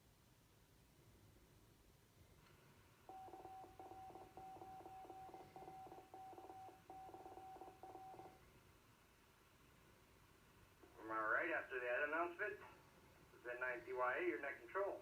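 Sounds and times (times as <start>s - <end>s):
morse code tone: 3.1s - 8.4s.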